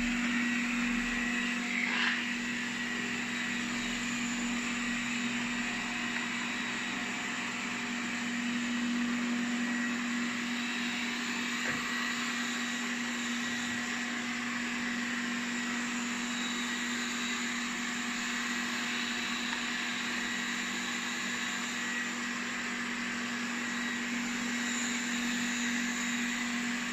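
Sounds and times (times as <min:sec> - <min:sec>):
robot vacuum suction motor whirring: 0:00.0 - 0:26.9.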